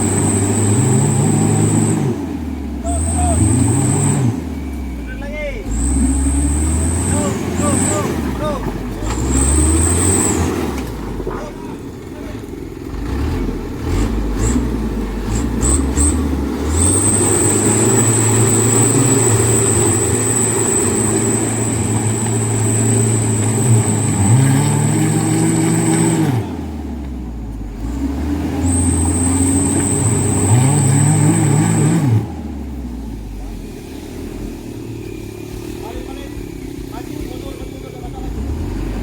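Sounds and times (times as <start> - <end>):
truck diesel engine revving: 0.0 - 39.0
high whistle: 16.8 - 24.4.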